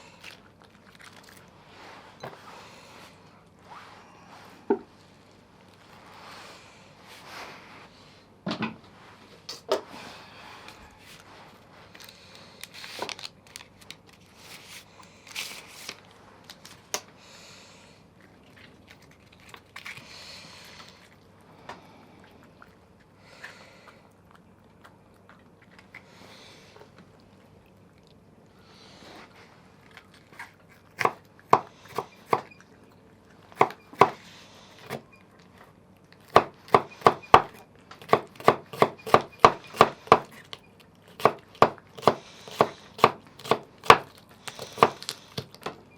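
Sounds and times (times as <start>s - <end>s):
kitchen rustling: 0.0s - 17.0s
knife chopping on cutting board: 31.0s - 32.5s, 33.6s - 34.2s, 36.3s - 40.4s, 41.2s - 45.0s.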